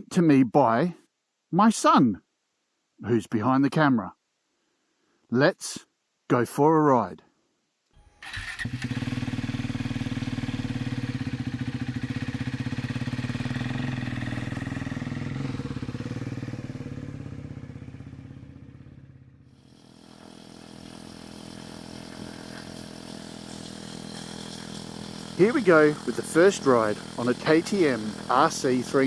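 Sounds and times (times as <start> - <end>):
quiet steady engine sound: 8.1 - 29.0
motorcycle engine pulsing: 8.6 - 18.5, 20.2 - 29.0.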